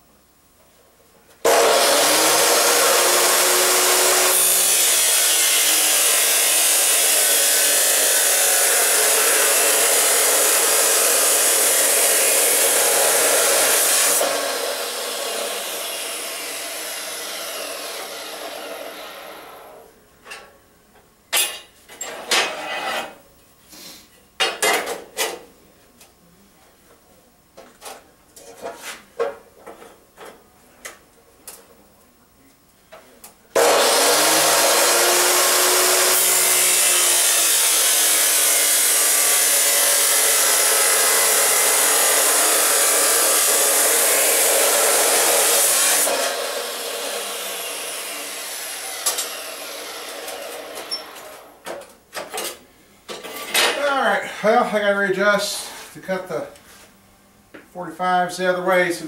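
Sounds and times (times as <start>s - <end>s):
chop saw cutting steel: 1.5s - 19.8s, 33.6s - 51.6s.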